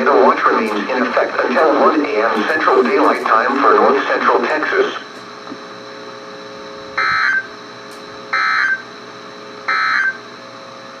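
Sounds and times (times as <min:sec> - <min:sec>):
radio hiss: 0:00.0 - 0:08.8
buzzy digital data tones: 0:05.8 - 0:08.9, 0:09.7 - 0:10.3.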